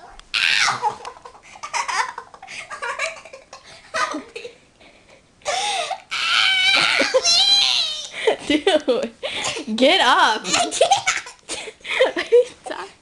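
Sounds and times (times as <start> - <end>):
person laughing and giggling: 0.6 - 4.6, 5.5 - 9.7, 10.4 - 12.6.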